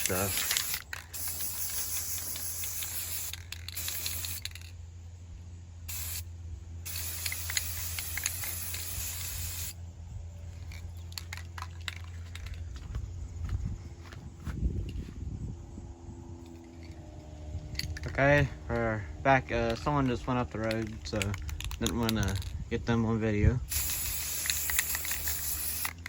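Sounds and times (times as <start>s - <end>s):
spray can hissing: 0.0s - 4.7s, 5.9s - 9.8s, 23.7s - 26.0s.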